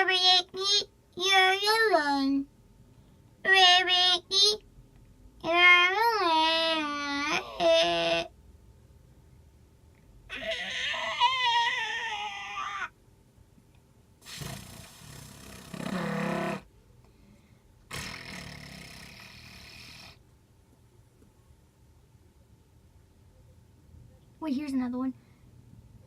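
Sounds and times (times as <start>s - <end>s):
child making animal-like noises: 5.4s - 8.3s, 10.3s - 13.0s.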